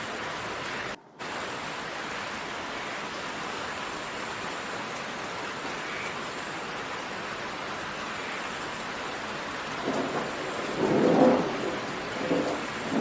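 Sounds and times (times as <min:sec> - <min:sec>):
heavy rain pouring: 0:00.0 - 0:13.0
thunder rumbling: 0:09.2 - 0:13.0.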